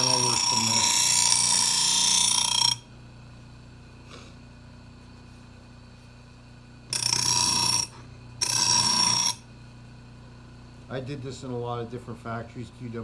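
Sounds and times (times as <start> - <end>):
grinder wheel grinding steel blade: 0.0 - 2.9, 6.9 - 9.4.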